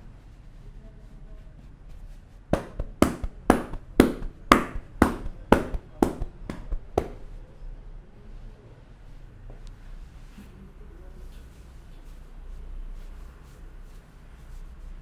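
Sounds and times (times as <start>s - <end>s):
hand slaps on head: 2.6s - 7.3s.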